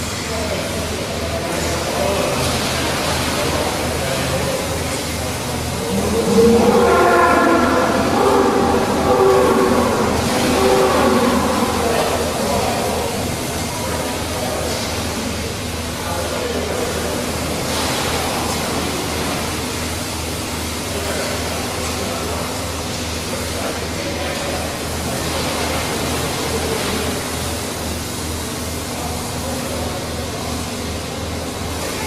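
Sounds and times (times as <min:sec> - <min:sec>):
milking machinery hum and hiss: 0:00.0 - 0:32.0
low pulsing throb: 0:05.4 - 0:14.1.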